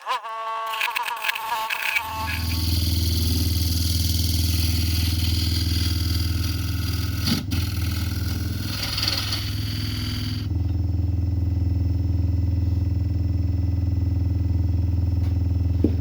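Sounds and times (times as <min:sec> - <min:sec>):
turning tool cutting wood hiss: 0:00.6 - 0:10.5
lathe motor hum: 0:00.8 - 0:16.0.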